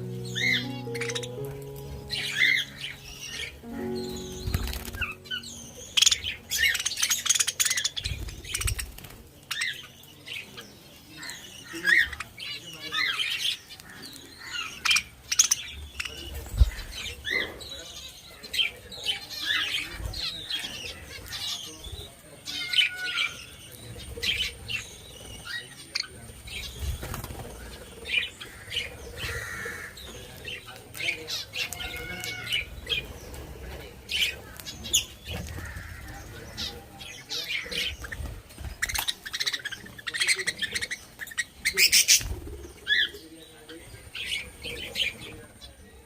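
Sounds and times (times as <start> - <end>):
birds chirping and calling: 0.0 - 46.0
wings flapping: 4.5 - 5.1, 7.7 - 9.6, 26.7 - 27.8, 41.9 - 42.8.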